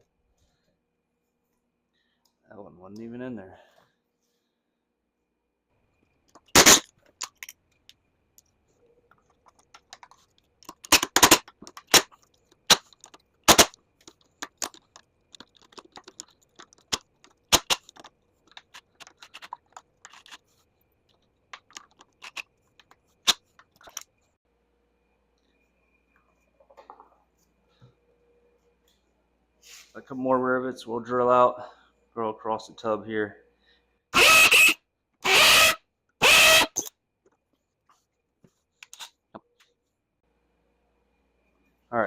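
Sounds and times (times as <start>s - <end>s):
metal parts and tools clattering: 14.1s - 20.5s.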